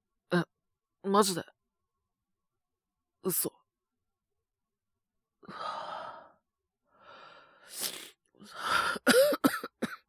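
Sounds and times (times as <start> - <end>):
sharp intake of breath: 7.3 - 8.2
man coughing: 9.0 - 10.0.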